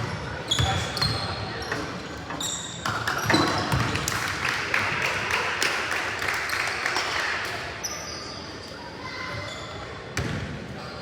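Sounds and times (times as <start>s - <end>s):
basketball bouncing on court: 10.2s - 10.4s.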